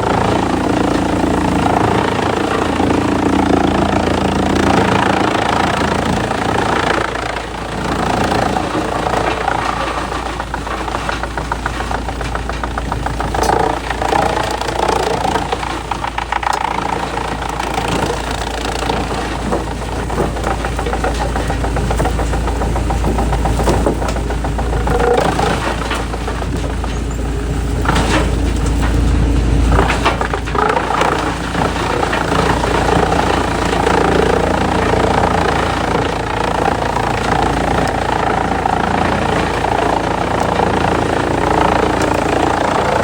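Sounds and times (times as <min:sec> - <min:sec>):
heavy machine engine rattling: 0:00.0 - 0:43.0.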